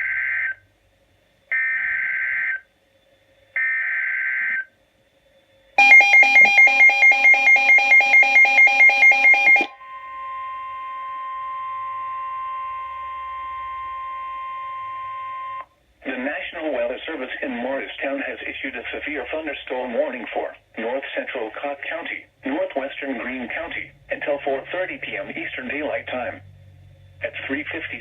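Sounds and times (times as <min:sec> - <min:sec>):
rapidly pulsing alert tone: 0:05.8 - 0:09.7
steady alarm tone: 0:05.8 - 0:15.6.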